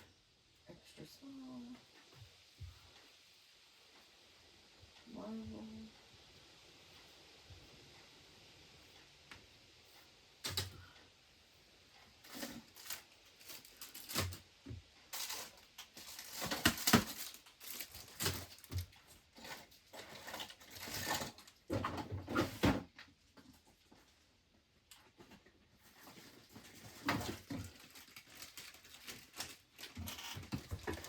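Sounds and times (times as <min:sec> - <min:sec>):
items rustling: 0:12.2 - 0:24.2, 0:24.9 - 0:31.0.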